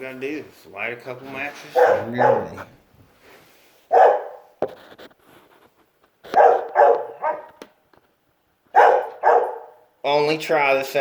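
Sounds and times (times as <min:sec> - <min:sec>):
dog barking: 0:01.7 - 0:02.8, 0:03.9 - 0:04.6, 0:06.3 - 0:07.6, 0:08.7 - 0:09.8.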